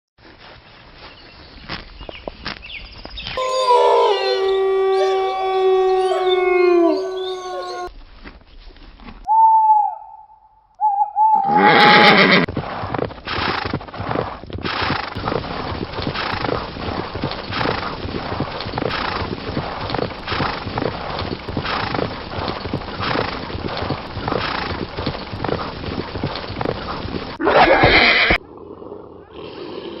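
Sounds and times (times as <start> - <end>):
loud animal call: 3.4 - 7.9.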